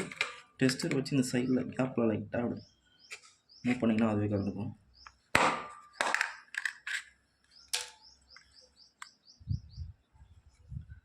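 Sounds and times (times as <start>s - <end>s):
bird chirping: 0.6s - 11.0s
plastic clicks and scrapes: 6.0s - 8.0s.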